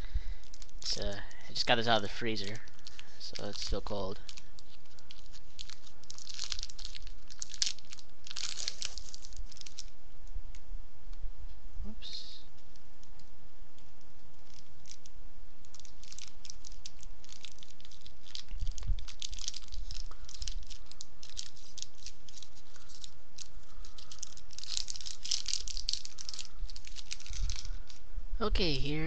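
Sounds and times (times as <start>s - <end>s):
candy wrapper crinkling: 0.3s - 10.6s, 12.6s - 28.0s.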